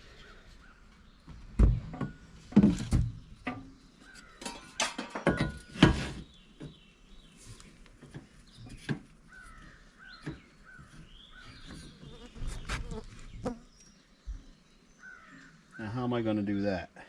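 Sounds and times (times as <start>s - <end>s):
metal tools knocking and clanking: 4.4s - 6.1s
crows cawing: 9.3s - 11.0s, 15.0s - 15.8s.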